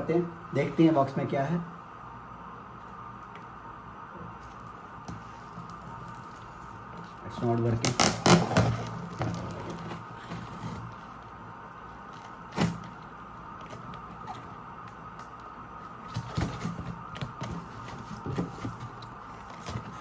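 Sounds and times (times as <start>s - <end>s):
steady low hum: 0.0s - 20.0s
cardboard parcel being opened: 4.5s - 20.0s.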